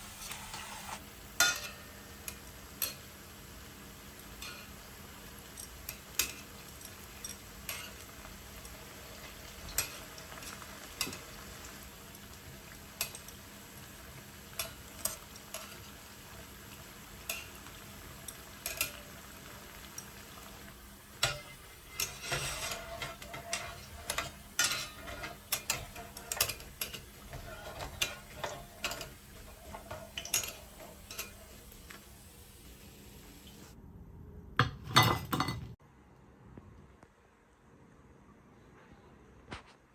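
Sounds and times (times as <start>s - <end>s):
utensil scraping a pan: 0.0s - 3.0s, 5.6s - 13.4s, 14.1s - 33.5s
potatoes sizzling in hot oil: 0.0s - 33.8s.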